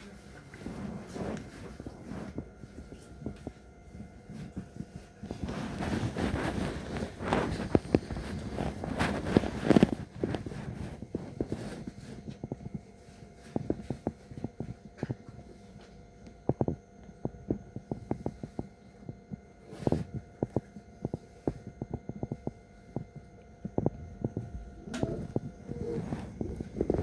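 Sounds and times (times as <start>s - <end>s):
train interior hum: 16.5s - 27.0s.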